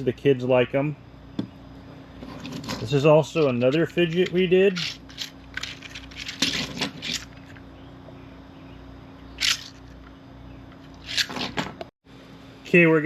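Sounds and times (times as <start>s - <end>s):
faint steady hum: 0.0s - 13.0s
plastic toy clicks and scrapes: 4.1s - 7.4s.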